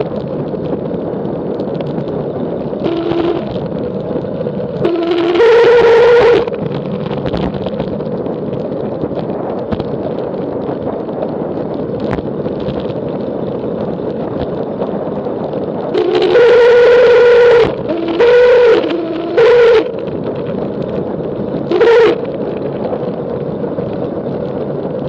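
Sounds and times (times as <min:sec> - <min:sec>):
wind rushing over camera: 0:00.0 - 0:25.0
loud droning hum: 0:02.1 - 0:07.8, 0:15.7 - 0:23.8.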